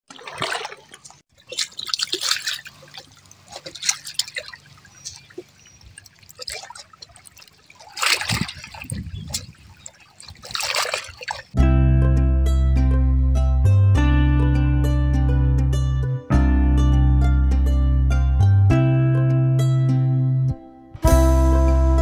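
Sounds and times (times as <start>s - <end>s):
small waves lapping on shore: 0.1s - 11.6s
trickling water: 0.1s - 11.6s.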